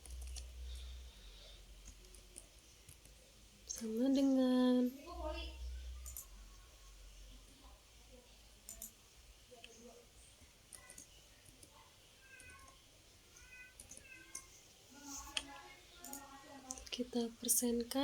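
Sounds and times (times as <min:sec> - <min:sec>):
faint high-pitched animal calls: 0:12.2 - 0:14.5.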